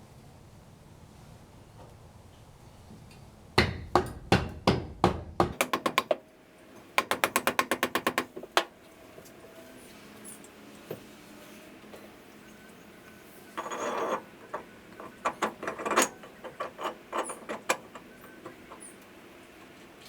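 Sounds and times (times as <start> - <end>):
hammer striking metal: 3.6 - 6.2.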